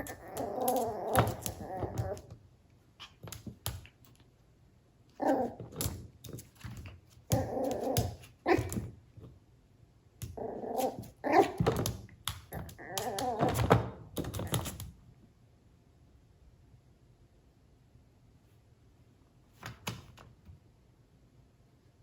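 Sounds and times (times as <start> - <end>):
puppy barking and growling: 0.0 - 2.4, 5.2 - 6.0, 7.3 - 9.0, 10.2 - 11.9, 12.5 - 14.7.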